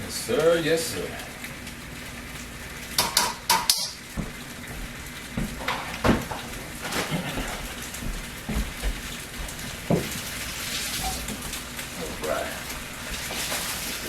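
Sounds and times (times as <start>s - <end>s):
faint sizzle: 0.0s - 14.0s
utensil knocking against pan: 3.0s - 4.0s.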